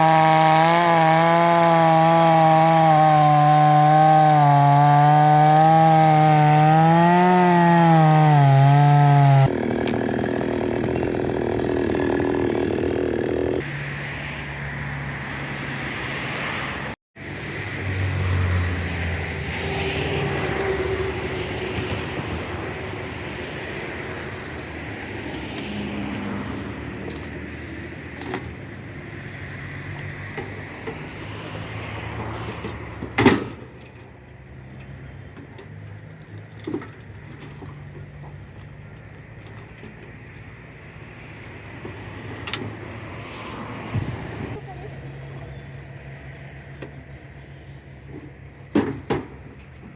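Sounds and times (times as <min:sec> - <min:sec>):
chainsaw revving and idling: 0:00.0 - 0:13.6
chainsaw engine idling: 0:08.2 - 0:13.6.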